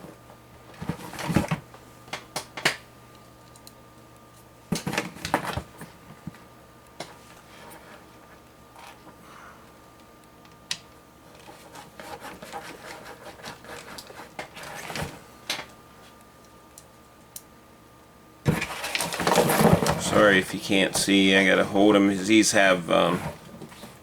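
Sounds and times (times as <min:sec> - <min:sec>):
rustling and rubbing: 0:11.4 - 0:15.2, 0:18.5 - 0:21.4, 0:22.6 - 0:24.0.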